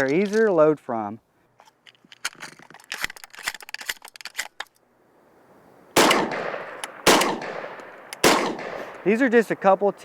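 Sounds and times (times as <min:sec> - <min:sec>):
shotgun shots echoing: 0:06.0 - 0:09.6.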